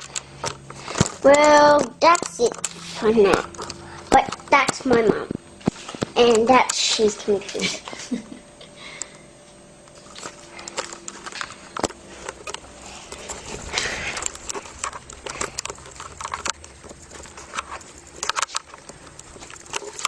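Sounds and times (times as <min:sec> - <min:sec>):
small clicks and taps: 0:00.0 - 0:06.9
rustling: 0:10.0 - 0:20.0.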